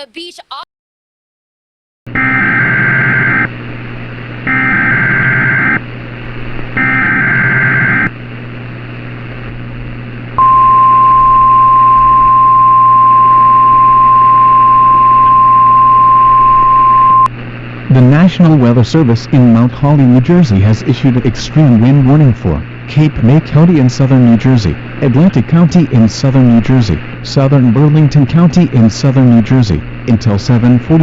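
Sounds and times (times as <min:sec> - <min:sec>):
steady warning alarm tone: 0:02.2 - 0:03.5, 0:04.4 - 0:05.8, 0:06.8 - 0:08.1, 0:10.4 - 0:17.3
hum and static hiss: 0:02.2 - 0:31.0.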